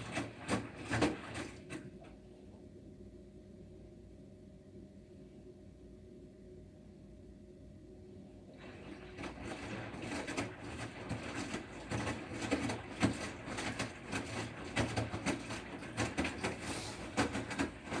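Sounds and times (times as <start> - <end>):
washing machine running: 0.0 - 2.5, 8.4 - 18.0.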